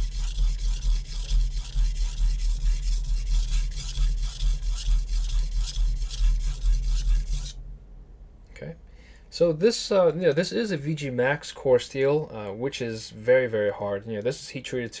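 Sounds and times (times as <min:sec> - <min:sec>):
knife scraping on whetstone: 0:00.0 - 0:07.6.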